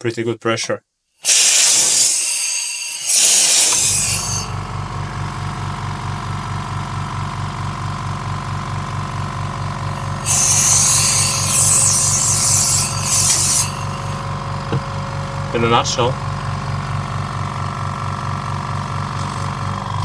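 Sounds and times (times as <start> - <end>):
compressed air hissing: 1.2 - 5.8, 9.8 - 15.9
compressor motor pulsing: 1.2 - 20.0.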